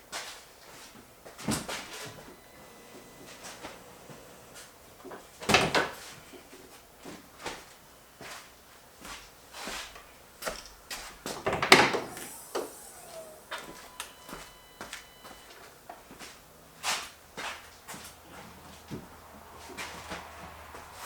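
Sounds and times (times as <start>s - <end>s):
knocks and clicks of handling: 11.3s - 15.4s.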